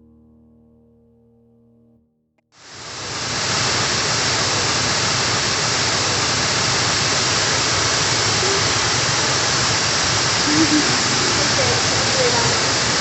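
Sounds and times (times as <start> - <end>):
waterfall rushing: 2.6 - 13.0.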